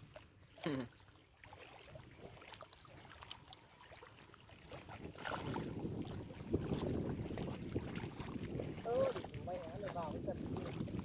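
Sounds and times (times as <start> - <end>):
water lapping and splashing: 0.0 - 11.0
wind buffeting microphone: 4.6 - 11.0.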